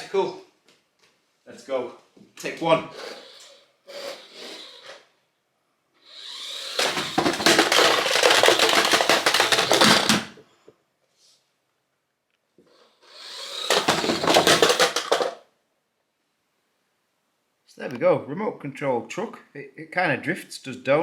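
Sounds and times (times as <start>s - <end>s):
electric motor whining: 2.9s - 5.0s, 6.1s - 10.3s, 13.0s - 15.3s.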